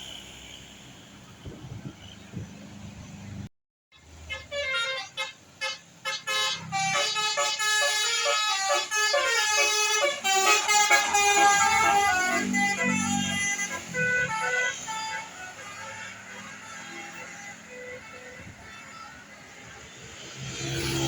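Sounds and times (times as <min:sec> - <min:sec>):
bus air horn playing a tune: 0:04.2 - 0:20.0.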